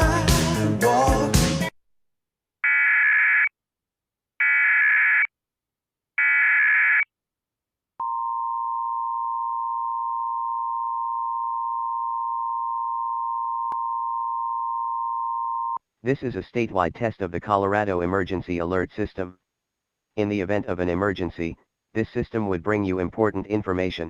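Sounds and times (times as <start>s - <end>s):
steady attention signal tone: 8.0s - 15.8s.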